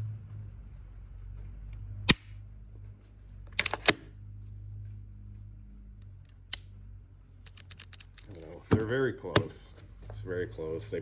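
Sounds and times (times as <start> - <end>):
metallic clicks: 3.5 - 4.1, 7.4 - 8.4.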